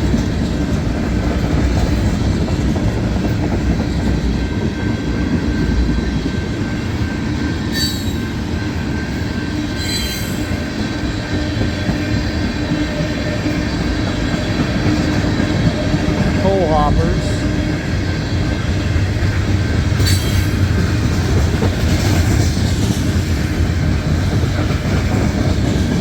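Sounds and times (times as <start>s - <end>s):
freight train wheels rumbling: 0.0s - 26.0s
high-pitched wheel squeals: 9.8s - 10.5s.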